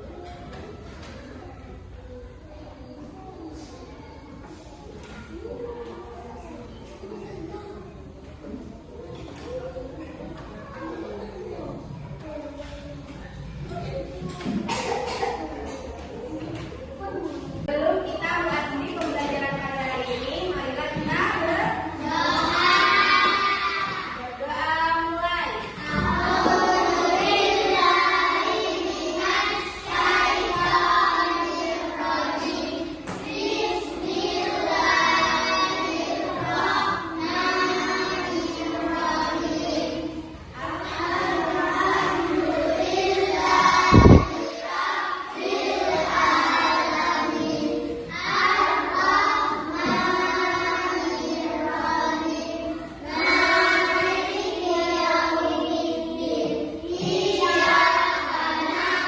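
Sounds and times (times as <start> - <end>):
children singing: 21.0 - 24.4, 25.0 - 59.0
loud thump: 43.9 - 44.4.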